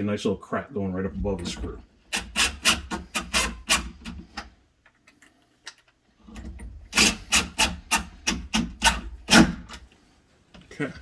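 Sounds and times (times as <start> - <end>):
scraping strokes on wood: 2.2 - 4.4.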